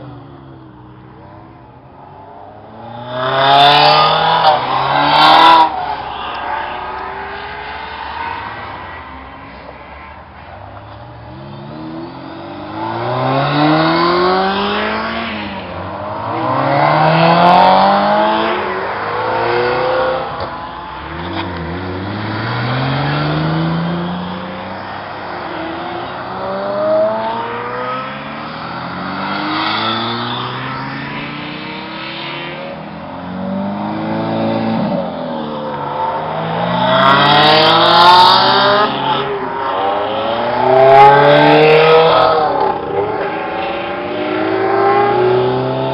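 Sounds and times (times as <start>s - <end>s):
sports car engines accelerating: 0.0s - 45.9s.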